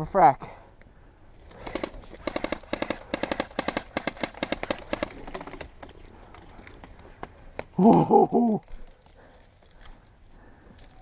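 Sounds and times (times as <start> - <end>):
airsoft gun firing sharp pops: 1.6 - 5.7.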